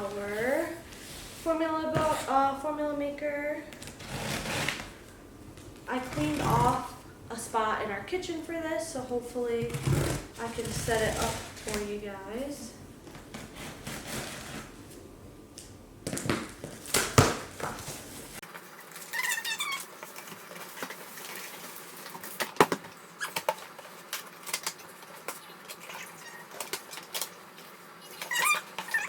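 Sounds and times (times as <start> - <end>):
brief squeaks: 19.1 - 19.9, 28.0 - 29.0.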